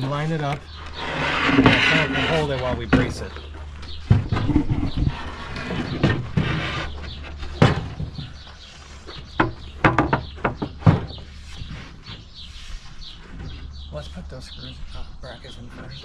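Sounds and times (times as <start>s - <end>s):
wooden boards knocking and scraping: 0.0s - 12.4s
small birds chirping: 0.0s - 16.0s.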